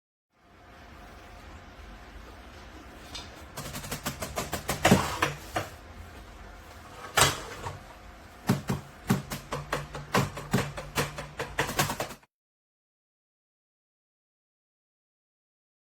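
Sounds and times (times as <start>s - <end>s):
drumsticks tapping electronic drum pads: 8.4s - 12.2s.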